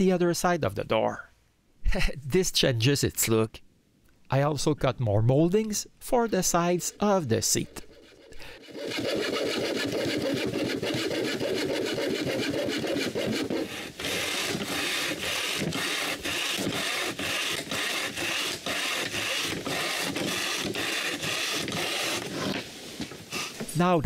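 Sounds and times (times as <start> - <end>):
saw cutting wood: 6.2 - 23.7.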